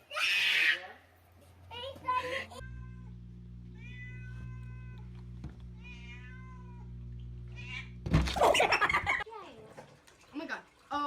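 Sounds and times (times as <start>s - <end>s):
steady low hum: 2.4s - 9.2s
cat meowing: 3.7s - 5.2s, 5.8s - 8.0s.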